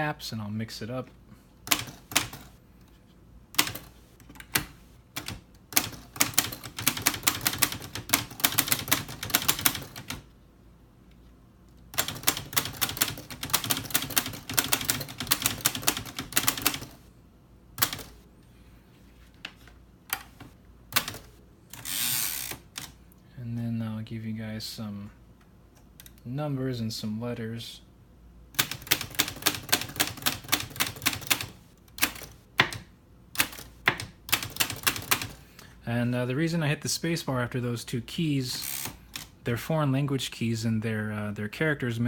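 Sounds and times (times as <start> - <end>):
manual typewriter typing: 1.6 - 2.5, 3.5 - 10.2, 11.9 - 17.0, 17.8 - 18.2, 20.1 - 23.0, 28.6 - 35.4, 38.5 - 39.4.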